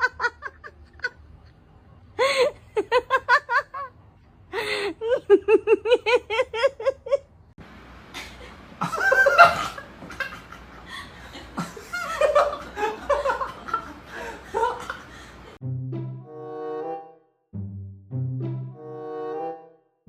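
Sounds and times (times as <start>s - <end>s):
person laughing in high bursts: 4.6s - 7.2s.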